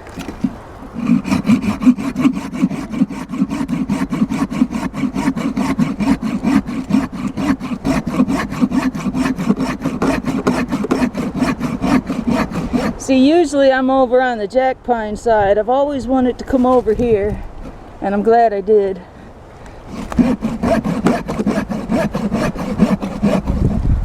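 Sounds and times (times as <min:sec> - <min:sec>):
hand saw cutting wood: 0:00.0 - 0:13.3, 0:16.4 - 0:17.8, 0:19.6 - 0:23.9.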